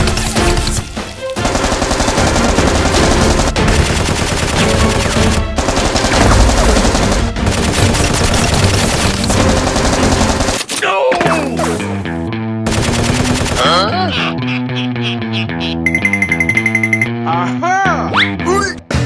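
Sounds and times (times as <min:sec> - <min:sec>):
rapid automatic gunfire: 0:01.4 - 0:10.6, 0:12.7 - 0:13.8.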